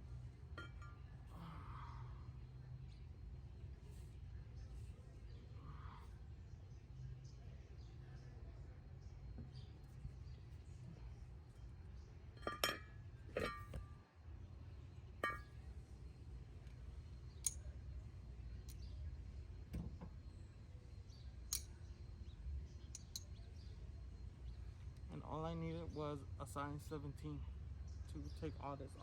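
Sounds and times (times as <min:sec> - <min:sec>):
metal parts clinking: 0:12.4 - 0:13.8, 0:15.2 - 0:15.5.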